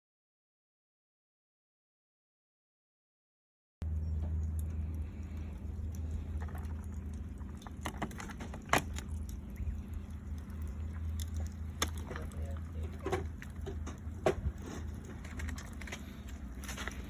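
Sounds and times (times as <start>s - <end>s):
small clicks and crackles: 3.8s - 17.0s
steady low rumble: 3.8s - 17.0s.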